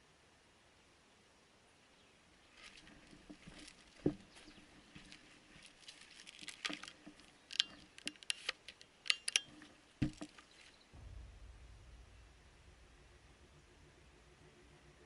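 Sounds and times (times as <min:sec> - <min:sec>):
dry leaves and twigs crackling: 0:02.4 - 0:11.0
dull thumps: 0:10.0 - 0:13.5
low rumble: 0:10.9 - 0:15.0.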